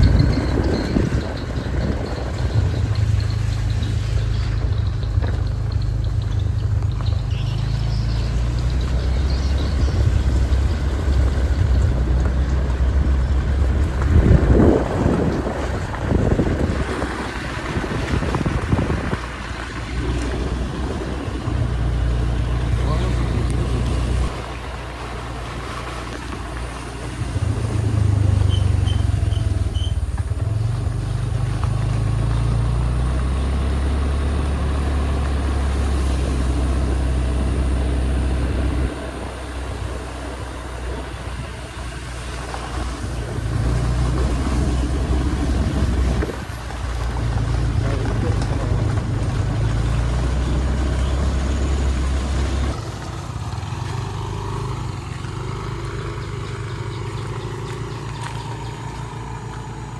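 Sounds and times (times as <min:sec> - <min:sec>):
vehicle engine and road noise: 0:00.0 - 0:59.9.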